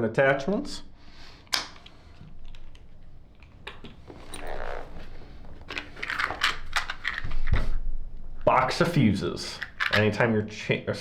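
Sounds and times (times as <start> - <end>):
bag rustling: 2.7 - 10.1.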